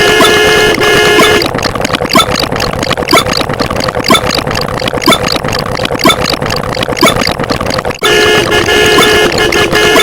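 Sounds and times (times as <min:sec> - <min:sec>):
held horn-like tone: 0:00.0 - 0:01.5, 0:08.0 - 0:10.0
engine-like rattle: 0:00.0 - 0:10.0
scattered thuds: 0:00.0 - 0:10.0.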